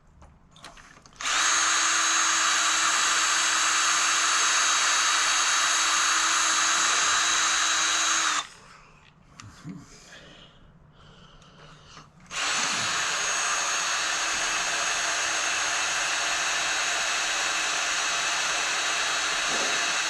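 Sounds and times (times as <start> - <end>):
electric drill running: 1.2 - 8.5, 12.3 - 20.0.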